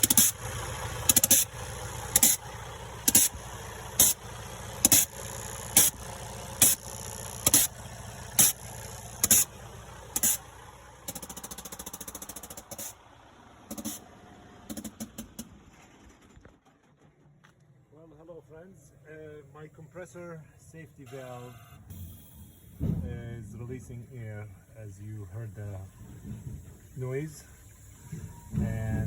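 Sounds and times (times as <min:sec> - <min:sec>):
safety valve hissing: 0:00.0 - 0:00.4, 0:01.0 - 0:04.2, 0:04.8 - 0:09.5, 0:10.1 - 0:10.5, 0:11.1 - 0:13.0, 0:13.7 - 0:14.0
diesel engine running: 0:00.0 - 0:29.0.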